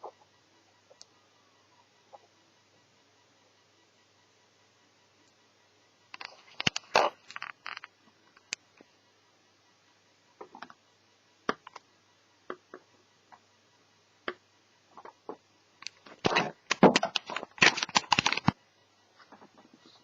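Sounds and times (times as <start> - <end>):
laptop parts clicking and scraping: 6.2 - 8.5, 15.8 - 18.6.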